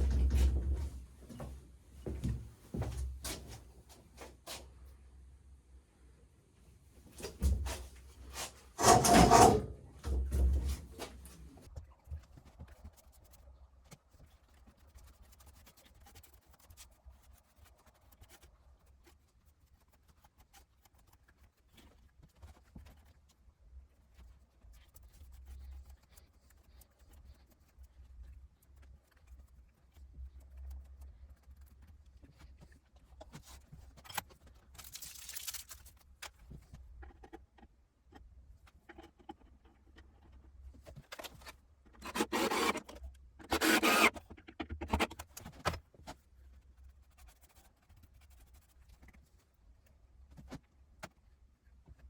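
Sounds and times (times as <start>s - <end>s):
small objects clicking and scraping: 34.0s - 36.4s.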